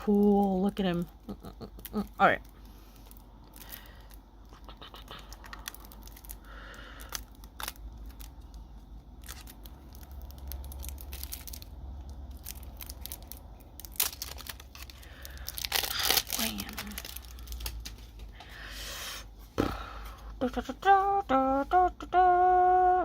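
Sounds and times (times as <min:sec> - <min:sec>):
plastic wrapper rustling: 0:00.0 - 0:18.4.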